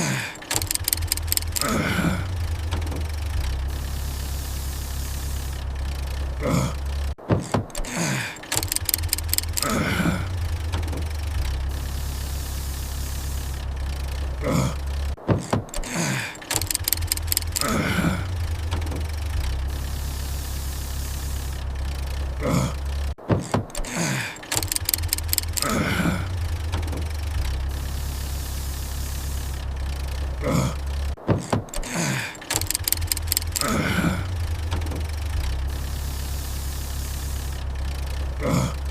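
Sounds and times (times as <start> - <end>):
car engine drone: 0.0 - 7.2, 7.8 - 15.2, 15.8 - 23.2, 23.8 - 31.2, 31.8 - 38.9
engine sputtering: 0.0 - 38.9
quick run of clicks: 0.0 - 38.9.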